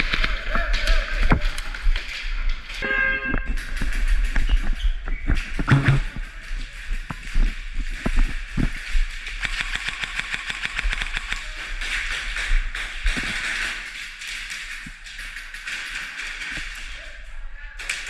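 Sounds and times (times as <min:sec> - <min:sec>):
scattered knocks: 0:05.2 - 0:06.3
airsoft guns firing: 0:08.7 - 0:16.8.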